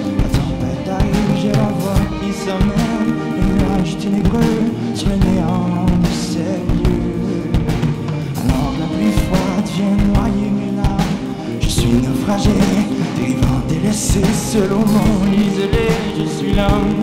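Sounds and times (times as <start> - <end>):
drum kit striking: 0.0 - 17.0
rock band playing live: 0.0 - 17.0.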